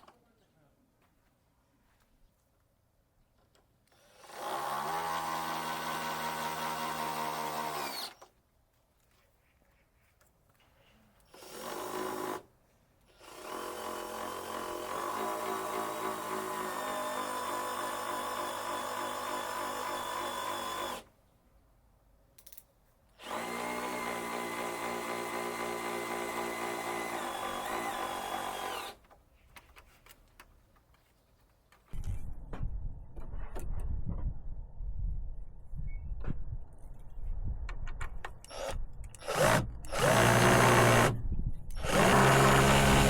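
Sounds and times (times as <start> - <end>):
electric drill motor running: 4.0 - 8.2, 13.2 - 21.0, 23.2 - 29.0, 38.5 - 43.0.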